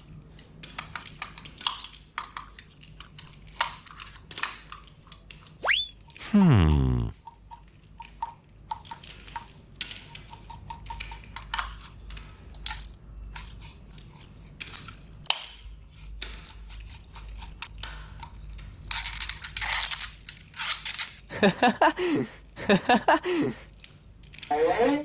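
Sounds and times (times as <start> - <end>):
tone falling in pitch: 5.6 - 7.1.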